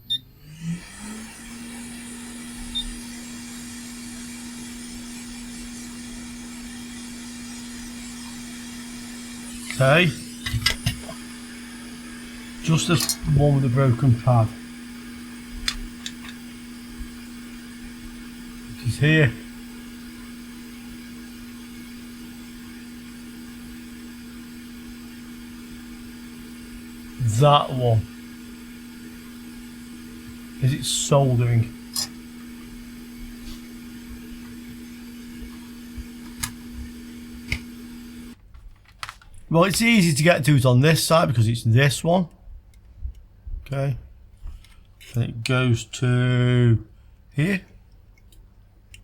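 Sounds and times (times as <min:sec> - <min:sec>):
fan hum: 0:00.0 - 0:48.0
hot air hiss: 0:00.8 - 0:38.4.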